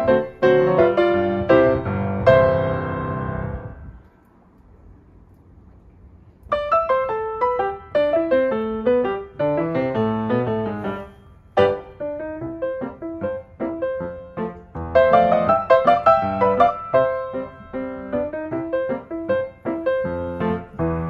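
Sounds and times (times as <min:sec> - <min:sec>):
piano melody with chords: 0:00.0 - 0:04.1, 0:06.4 - 0:21.0.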